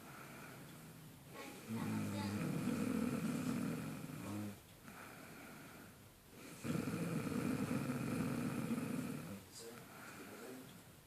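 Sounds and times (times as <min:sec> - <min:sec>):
woman snoring: 0:01.6 - 0:04.6, 0:06.4 - 0:09.4.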